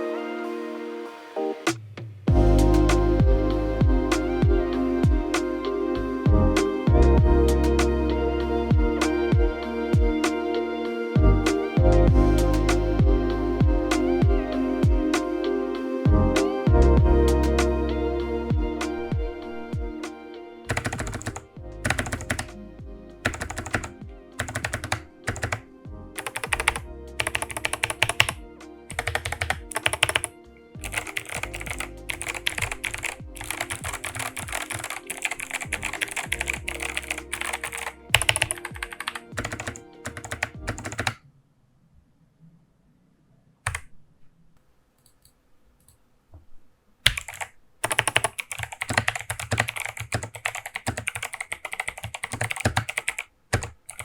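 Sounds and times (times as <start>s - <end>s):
background music: 0.0s - 41.2s, 47.2s - 53.2s
typing on mechanical keyboard: 20.7s - 22.5s, 23.2s - 25.6s, 26.2s - 41.2s, 43.7s - 43.9s, 47.1s - 54.0s.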